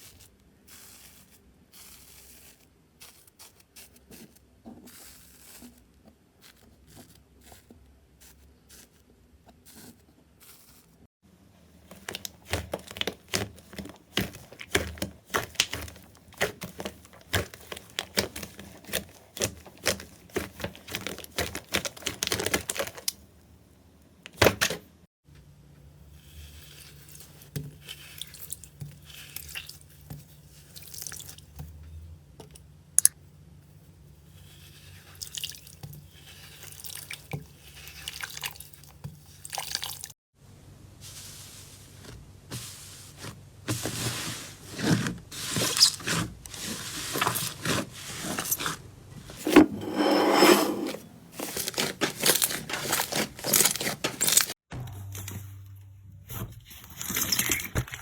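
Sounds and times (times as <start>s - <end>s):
wet slime squishing: 11.8s - 23.2s, 26.5s - 31.6s, 34.4s - 40.1s, 51.4s - 54.6s.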